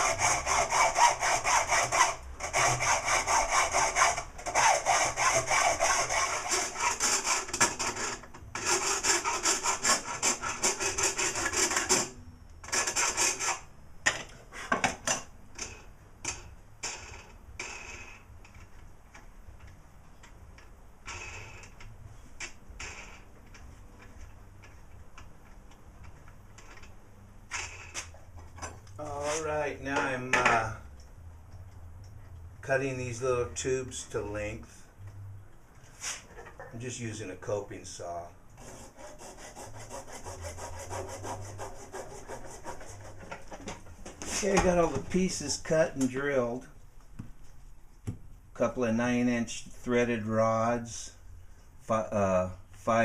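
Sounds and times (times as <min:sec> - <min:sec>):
saw cutting threaded rod: 0:00.0 - 0:13.7, 0:38.6 - 0:43.2.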